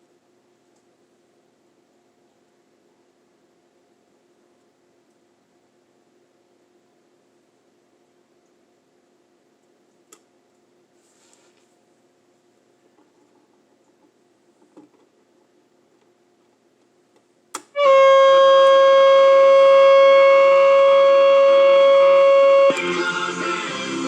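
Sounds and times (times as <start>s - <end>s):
faint steady hum: 0.0s - 24.0s
soft hiss: 9.5s - 17.7s
music from radio speaker: 22.6s - 24.0s.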